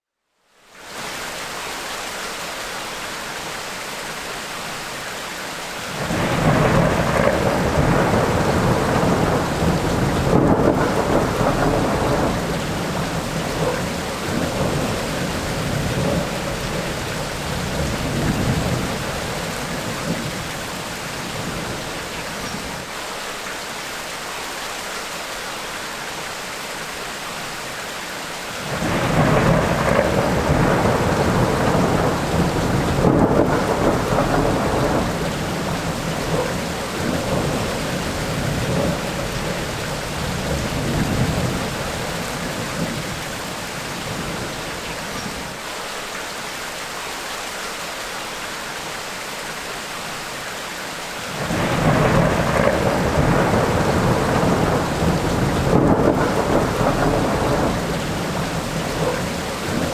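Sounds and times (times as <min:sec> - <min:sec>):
steady rain: 0:00.4 - 0:59.9
rolling thunder: 0:05.9 - 0:22.7, 0:28.6 - 0:45.4, 0:51.3 - 0:59.9.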